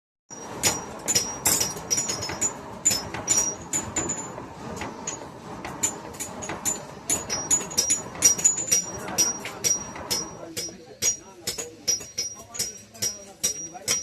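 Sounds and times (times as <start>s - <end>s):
hammer striking iron on anvil: 0.3s - 14.0s.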